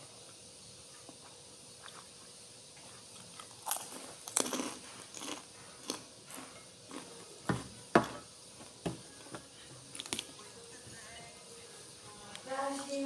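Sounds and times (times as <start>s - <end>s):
crisp crunches of chewing crackers: 2.8s - 7.2s.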